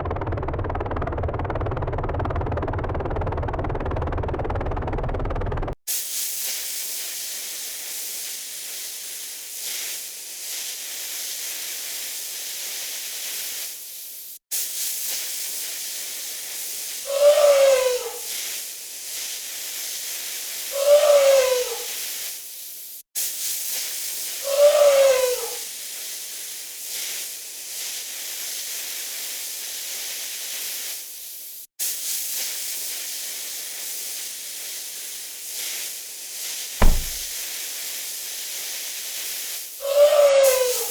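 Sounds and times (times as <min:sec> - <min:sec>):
animal cries falling in pitch: 0:17.1 - 0:18.2, 0:20.8 - 0:21.9, 0:24.5 - 0:25.6.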